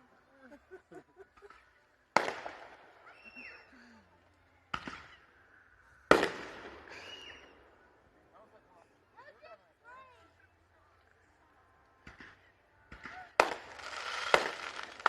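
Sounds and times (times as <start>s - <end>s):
fireworks bursting: 1.4s - 3.6s, 6.0s - 7.8s, 12.1s - 15.0s.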